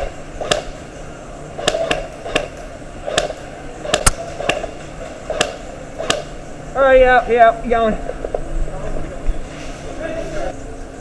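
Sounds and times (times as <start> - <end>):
airsoft gun shots: 0.0 - 0.8, 1.6 - 6.4.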